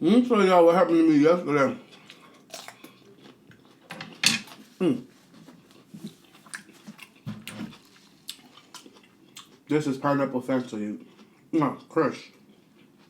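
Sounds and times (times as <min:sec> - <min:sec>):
wet chewing and lip-smacking: 0:05.7 - 0:09.6.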